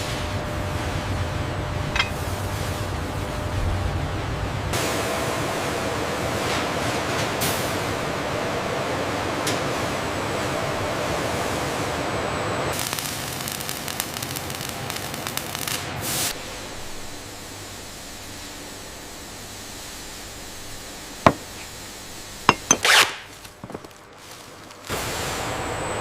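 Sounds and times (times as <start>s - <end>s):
steady workshop hiss: 12.8s - 25.8s.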